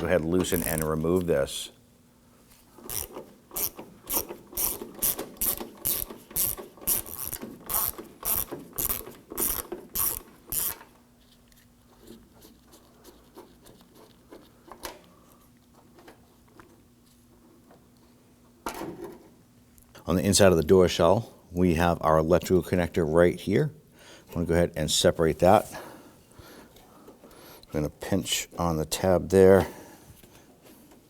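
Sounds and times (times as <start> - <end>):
ratchet wrench clicking: 2.9 - 10.8.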